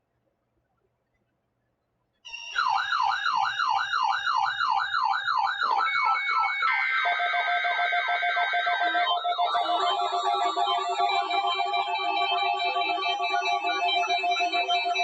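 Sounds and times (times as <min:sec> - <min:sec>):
electronic siren warble: 0:02.3 - 0:15.0
synthesizer music: 0:05.9 - 0:15.0.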